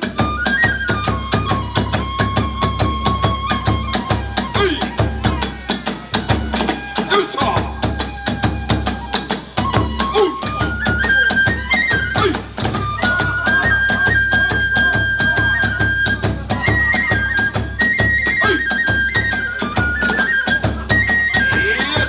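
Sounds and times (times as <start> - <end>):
bamboo flute melody: 0.0 - 22.0
drum beat: 0.0 - 22.0
small hand cymbals: 1.0 - 15.4.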